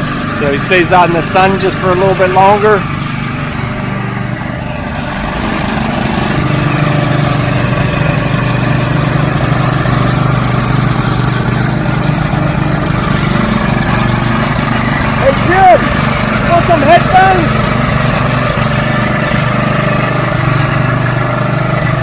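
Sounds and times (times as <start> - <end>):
power trowel engines droning: 0.0 - 22.0.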